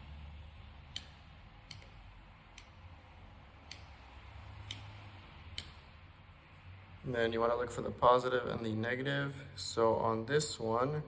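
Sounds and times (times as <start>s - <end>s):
screwdriver clicks: 0.9s - 2.0s.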